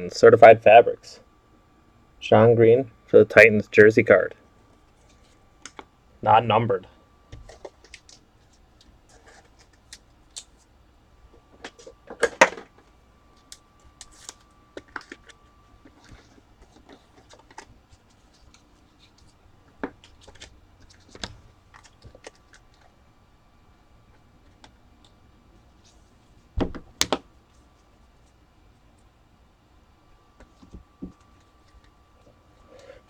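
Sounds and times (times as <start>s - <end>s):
cards and packaging handled: 7.3s - 10.7s, 11.6s - 23.0s.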